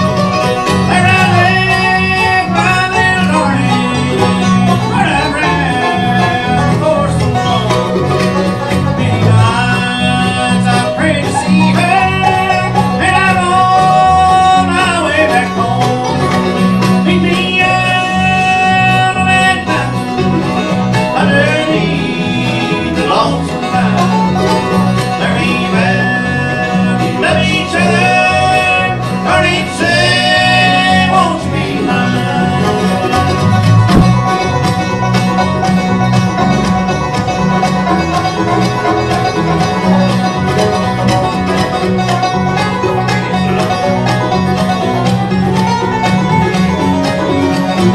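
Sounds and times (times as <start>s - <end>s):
acoustic string instruments: 0.0s - 47.9s
person singing: 0.8s - 8.1s, 8.9s - 20.2s, 20.9s - 34.3s
steady beat: 31.9s - 39.9s.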